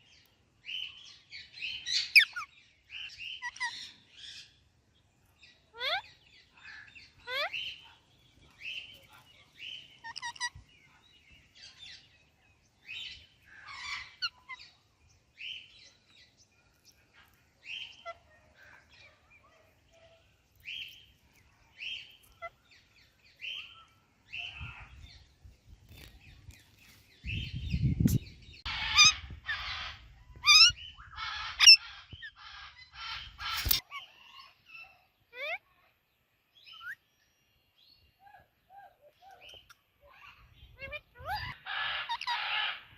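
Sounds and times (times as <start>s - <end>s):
parakeets chirping: 8.6s - 10.7s, 12.8s - 14.8s, 28.2s - 33.9s
parakeets squawking harshly: 10.0s - 10.6s, 28.7s - 33.9s, 40.9s - 42.9s.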